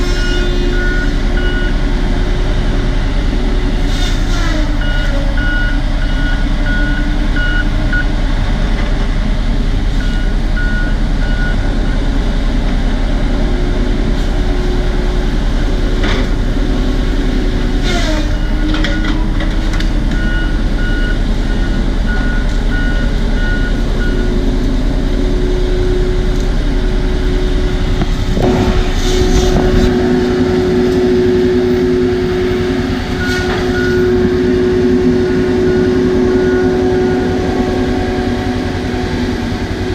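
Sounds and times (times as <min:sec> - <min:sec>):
bulldozer diesel engine: 0:00.0 - 0:39.9
back-up alarm beeping: 0:20.1 - 0:24.4, 0:29.2 - 0:39.2.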